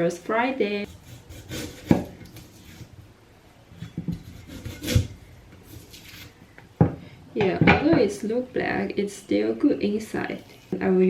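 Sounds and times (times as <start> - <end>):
garlic skin rubbing and scraping: 0.9 - 3.0, 4.1 - 6.4.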